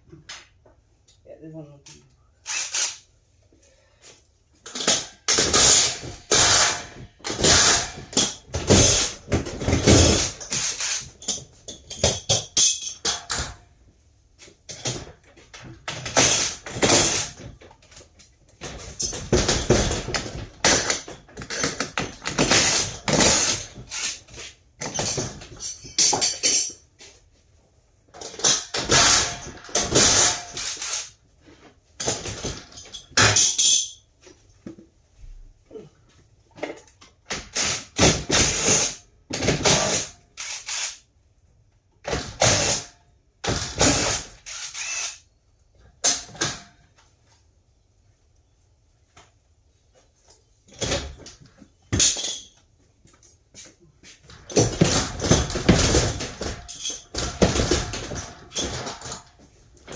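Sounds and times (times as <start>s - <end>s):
metal clanking and rattling: 14.7s - 26.9s, 32.0s - 34.1s, 54.3s - 59.9s.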